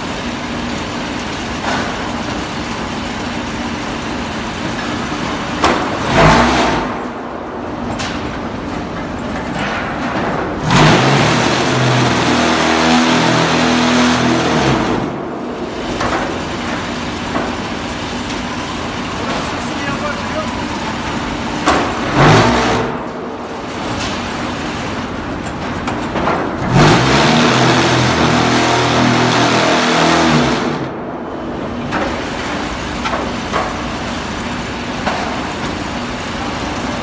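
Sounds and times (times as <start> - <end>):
loud machine clatter: 0.0 - 37.0
machine mechanical hum: 0.0 - 37.0
pitched machine drone: 10.6 - 25.1.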